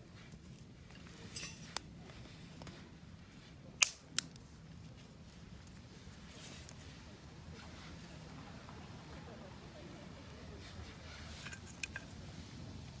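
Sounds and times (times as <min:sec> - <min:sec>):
sharp clicks or snaps: 0:03.8 - 0:04.4.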